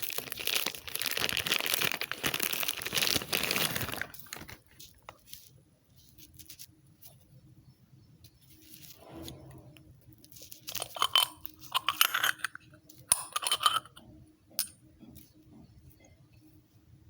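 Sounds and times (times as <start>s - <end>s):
plastic packaging crinkling: 0.0s - 5.5s.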